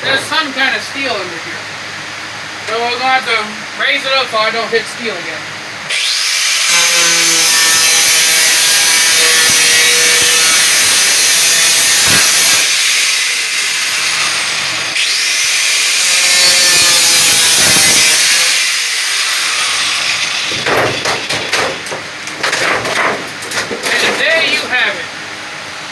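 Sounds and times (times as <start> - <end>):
angle grinder cutting metal sheet: 5.9 - 25.0
knocks and clatter: 20.5 - 25.0.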